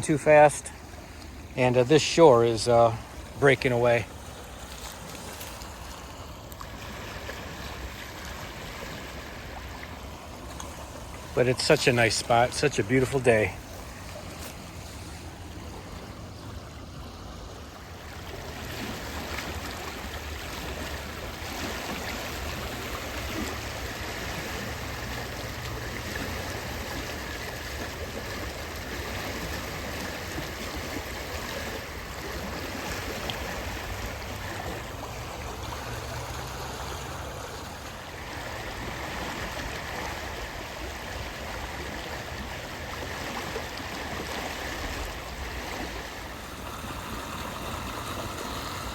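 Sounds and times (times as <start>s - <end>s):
river water rushing: 0.0s - 48.9s.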